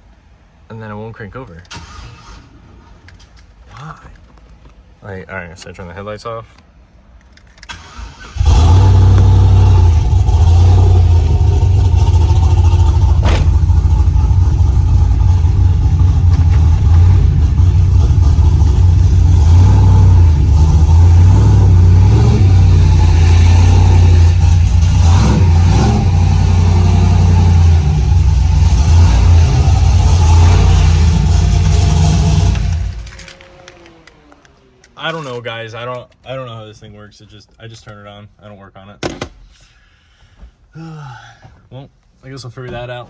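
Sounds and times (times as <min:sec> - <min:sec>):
pickup truck engine running loudly: 0:08.4 - 0:33.1.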